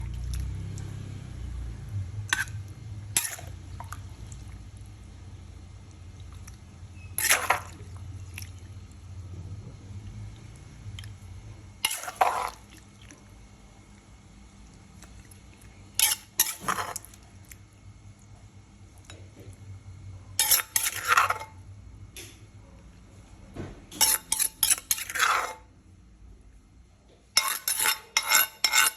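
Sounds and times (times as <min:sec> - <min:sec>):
utensils clinking against dish: 0:16.0 - 0:17.0, 0:20.4 - 0:21.5, 0:23.9 - 0:25.6, 0:27.4 - 0:28.9.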